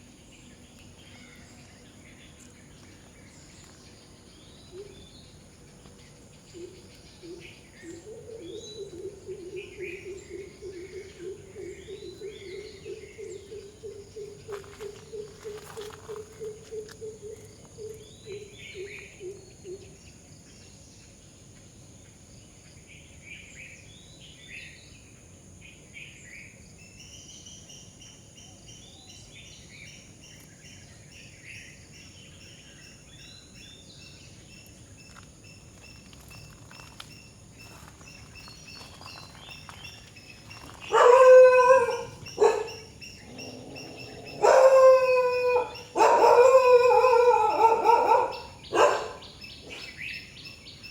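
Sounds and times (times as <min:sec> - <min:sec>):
birds chirping: 0:28.8 - 0:50.9.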